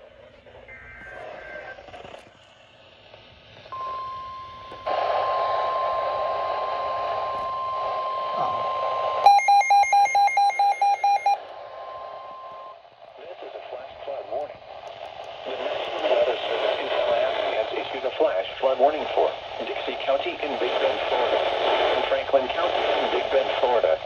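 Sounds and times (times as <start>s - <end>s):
radio static: 0.2s - 3.0s, 4.8s - 9.6s, 12.9s - 24.0s
rapid electronic alarm beeping: 9.2s - 11.4s
steady alarm tone: 9.2s - 12.7s.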